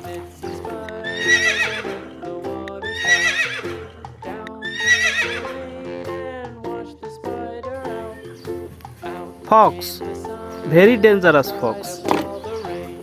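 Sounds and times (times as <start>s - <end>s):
background music: 0.0s - 13.0s
horse whinnying: 0.9s - 5.6s.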